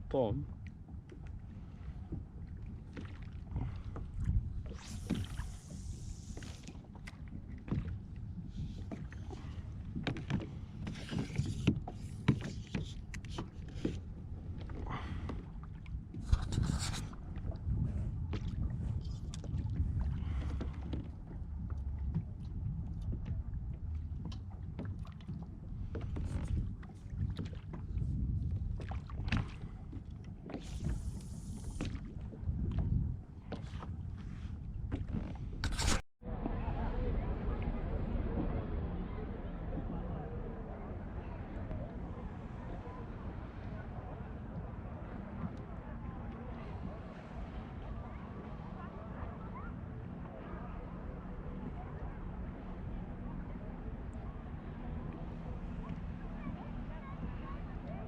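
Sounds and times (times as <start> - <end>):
low rumble of water: 0.0 - 58.0
knocks and clicks against hull: 0.4 - 36.6, 44.4 - 47.1.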